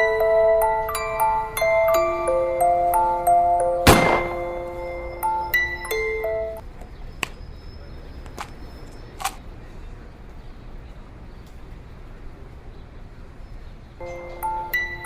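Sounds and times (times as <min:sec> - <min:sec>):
slow sad music-box tune: 0:00.0 - 0:06.6, 0:14.0 - 0:15.0.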